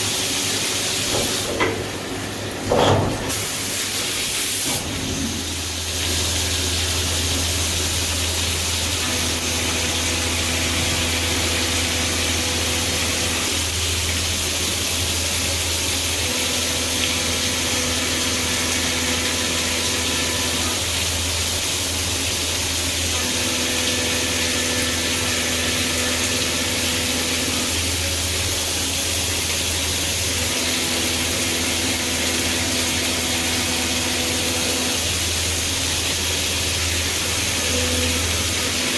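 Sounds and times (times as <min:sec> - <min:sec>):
mill machine hum: 0:00.0 - 0:20.8.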